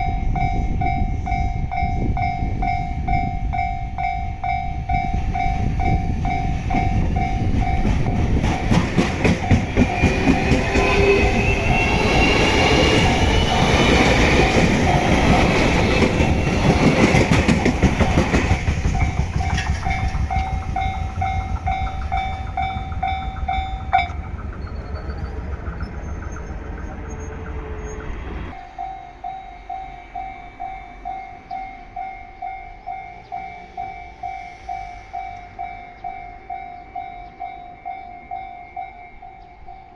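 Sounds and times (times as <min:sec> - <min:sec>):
train motor whine: 0:05.2 - 0:32.0
train wheels clacking on rail joints: 0:05.4 - 0:28.6.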